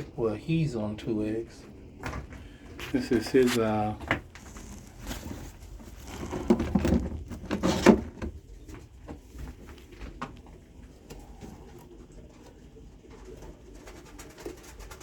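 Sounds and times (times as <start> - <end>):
pigeons rustling and scuffling: 0.0 - 15.0.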